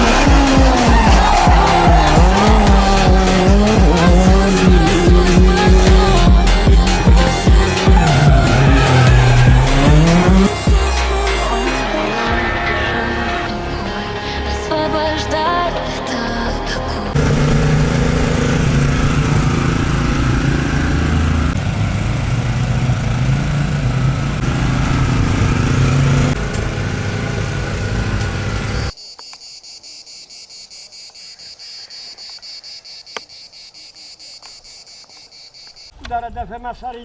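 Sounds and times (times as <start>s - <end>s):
rally car engine at high revs: 0.0s - 11.1s, 17.1s - 28.9s
insects chirping: 17.2s - 36.0s.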